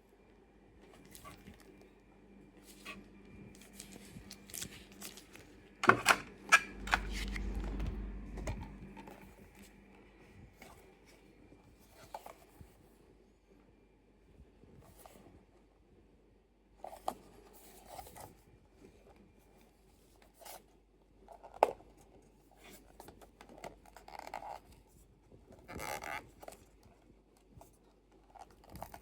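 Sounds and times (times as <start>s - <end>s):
low handling rumble: 2.6s - 11.1s
packaging clicks and rustles: 3.6s - 7.6s.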